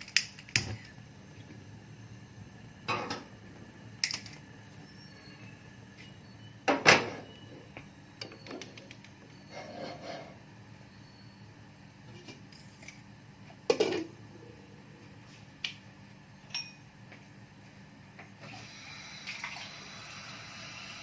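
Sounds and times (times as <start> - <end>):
pots and utensils clattering: 2.9 - 3.3, 13.7 - 14.1.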